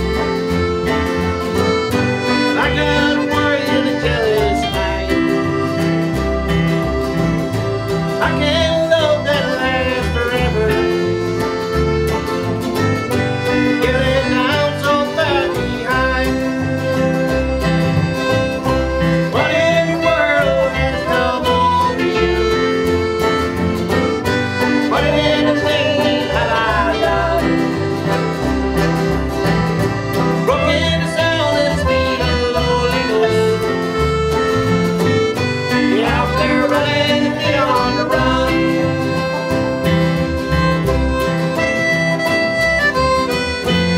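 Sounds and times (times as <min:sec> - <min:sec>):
acoustic country band music: 0:00.0 - 0:43.9.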